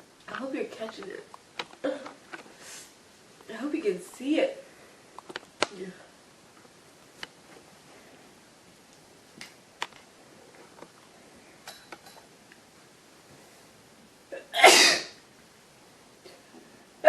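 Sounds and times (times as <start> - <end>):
person sneezing: 14.4 - 15.2.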